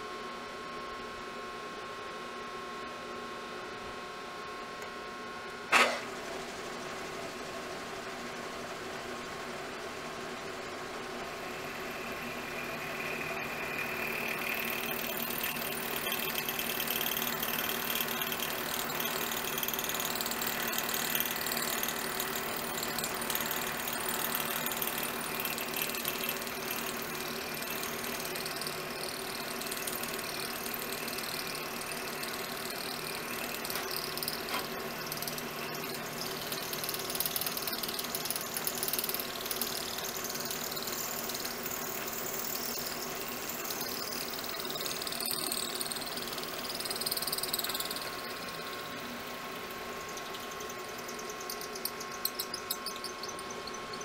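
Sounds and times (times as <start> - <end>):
milling machine motor hum: 5.7 - 54.0
end mill cutting metal: 11.2 - 54.0.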